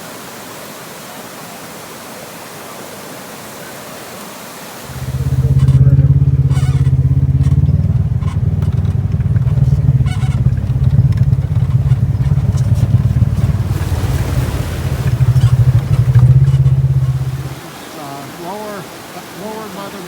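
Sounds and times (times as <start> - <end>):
engine running with rattling: 4.9 - 17.6.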